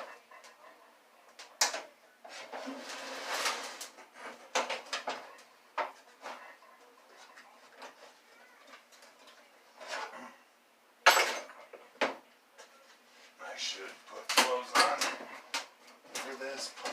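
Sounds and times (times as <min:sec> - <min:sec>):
metal scraping: 0:02.3 - 0:04.9.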